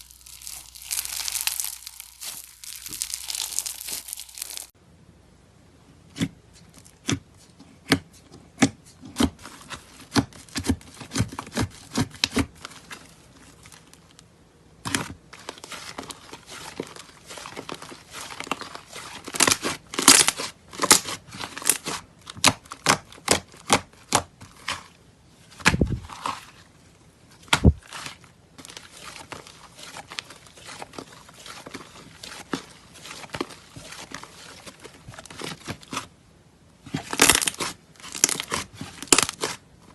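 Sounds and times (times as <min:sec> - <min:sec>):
crinkly crackling: 0:00.0 - 0:04.8.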